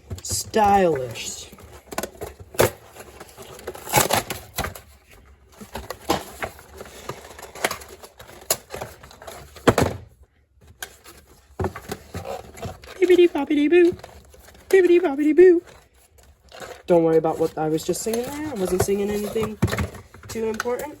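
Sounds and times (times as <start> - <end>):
cardboard box being handled: 15.6 - 21.0.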